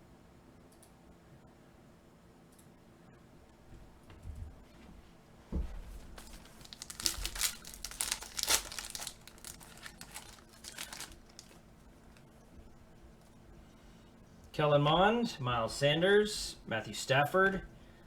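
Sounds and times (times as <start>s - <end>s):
wrapper tearing and crinkling: 6.1s - 11.6s.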